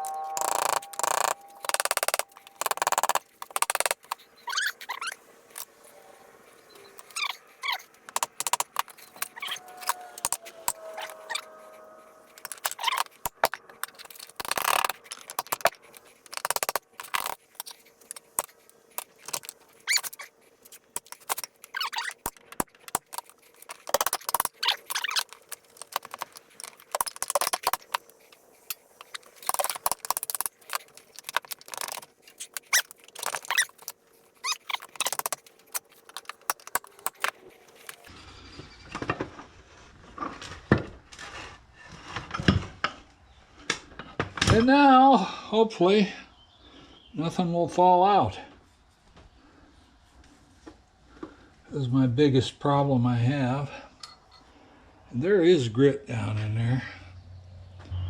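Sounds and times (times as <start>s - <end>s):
metal tools clicking and clinking: 0.0s - 5.7s
short squeak: 0.0s - 17.8s, 19.3s - 22.3s, 23.2s - 26.6s, 31.7s - 35.4s.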